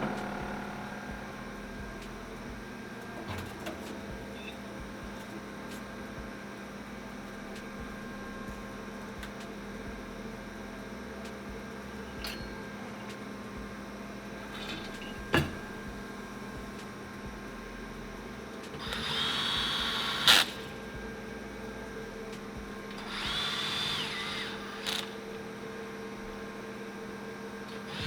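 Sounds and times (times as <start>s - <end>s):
shop equipment humming: 0.0s - 28.0s.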